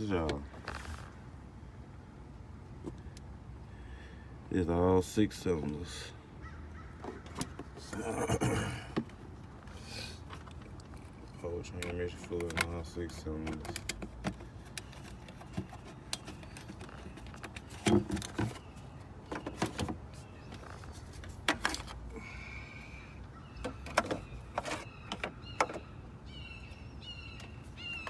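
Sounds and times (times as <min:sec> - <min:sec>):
bird chirping: 0:14.4 - 0:21.3, 0:22.3 - 0:28.0.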